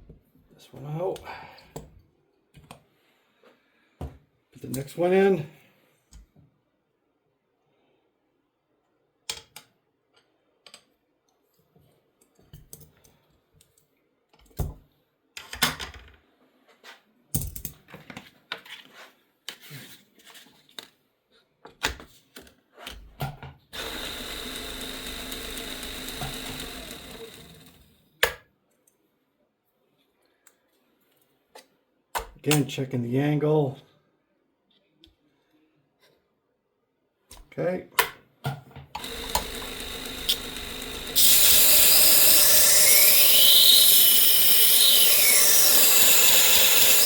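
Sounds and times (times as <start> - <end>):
mechanical whir: 23.8 - 27.7, 39.0 - 47.0.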